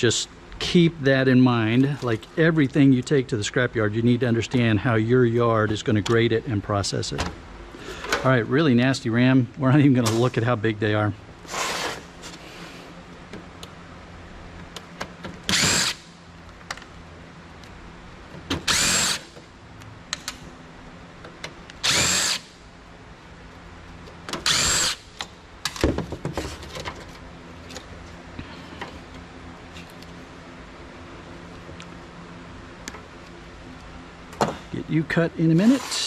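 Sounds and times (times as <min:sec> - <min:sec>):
power drill spinning: 0:15.5 - 0:16.0, 0:18.6 - 0:19.4, 0:21.8 - 0:22.5, 0:24.4 - 0:25.0, 0:35.6 - 0:36.0
parts clicking and clattering: 0:25.2 - 0:28.2.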